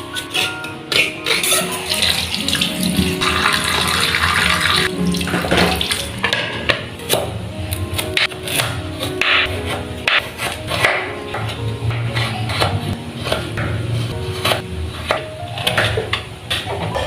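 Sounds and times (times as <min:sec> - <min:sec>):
background music: 0:00.0 - 0:17.0
water running from tap: 0:01.3 - 0:06.0.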